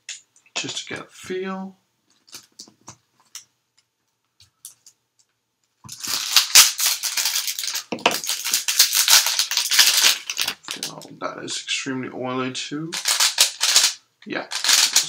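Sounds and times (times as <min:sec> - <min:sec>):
puzzle cube layers clattering: 0:05.9 - 0:11.0, 0:12.9 - 0:15.0.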